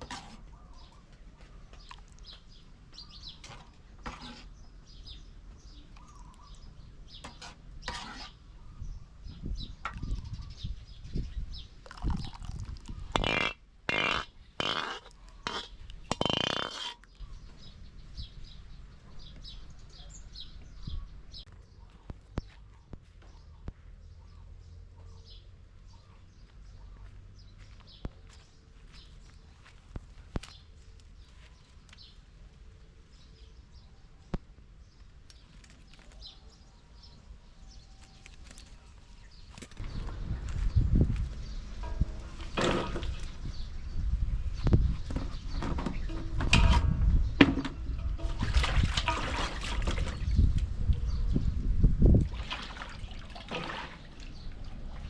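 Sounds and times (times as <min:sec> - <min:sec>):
small birds chirping: 0:00.0 - 0:48.2.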